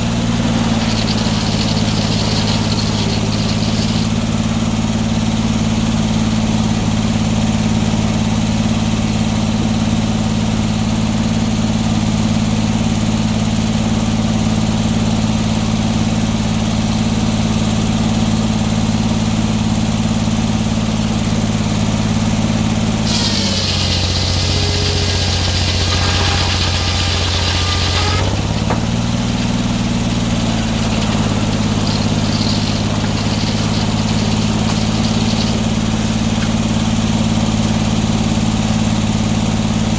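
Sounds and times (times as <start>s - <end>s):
sawmill engine running: 0.0s - 7.2s, 21.9s - 39.9s
loud high hiss: 0.4s - 4.4s, 23.1s - 37.2s.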